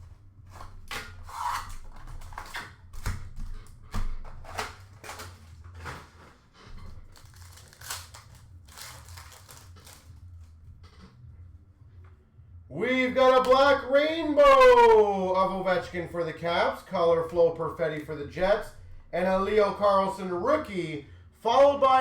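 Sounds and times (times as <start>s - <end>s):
foil card packs tearing and rustling: 0.3s - 10.6s.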